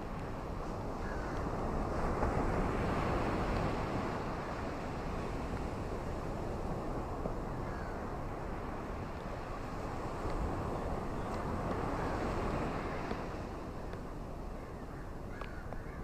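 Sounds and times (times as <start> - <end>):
ocean waves washing onto beach: 0.0 - 16.0.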